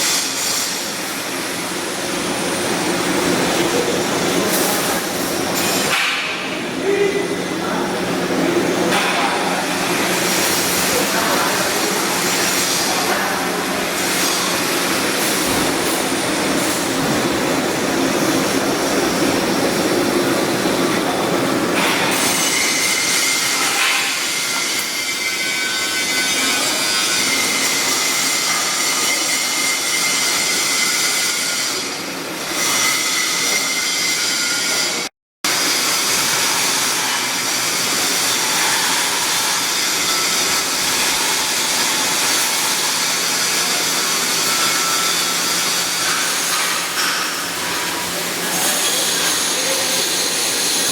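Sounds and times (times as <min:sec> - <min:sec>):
arc welding crackle: 0:35.5 - 0:50.9.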